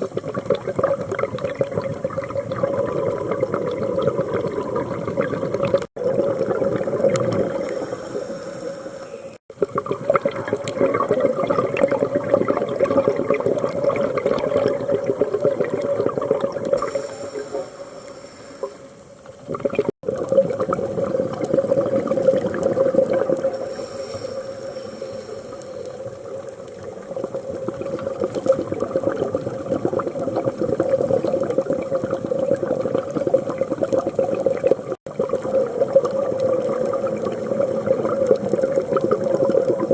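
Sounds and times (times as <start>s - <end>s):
exhaled bubbles gurgling: 0.0s - 17.8s, 18.6s - 39.9s
scuba regulator breathing: 7.4s - 9.4s, 16.8s - 18.9s, 23.4s - 26.0s.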